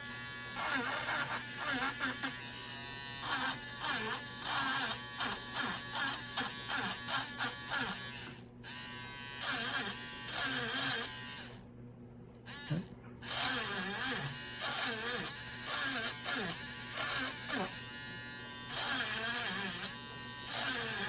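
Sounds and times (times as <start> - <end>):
engraving pen buzzing on metal: 0.0 - 11.6, 12.5 - 21.0.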